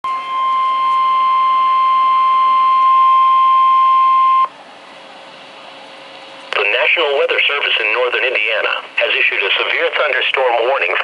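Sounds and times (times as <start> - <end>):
weather radio alarm beep: 0.1 - 4.5
faint radio hiss: 6.5 - 11.0.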